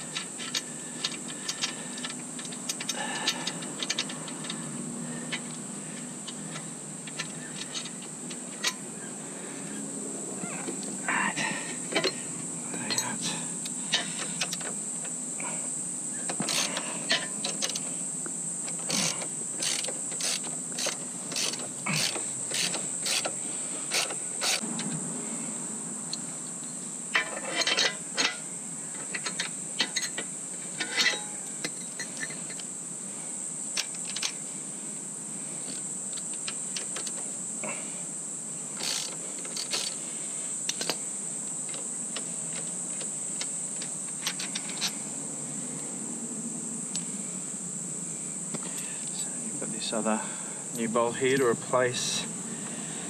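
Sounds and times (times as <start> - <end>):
metal tools clinking: 12.8 - 13.3, 27.1 - 28.4, 30.8 - 32.6
ratchet clicking: 18.7 - 24.6, 38.8 - 40.0.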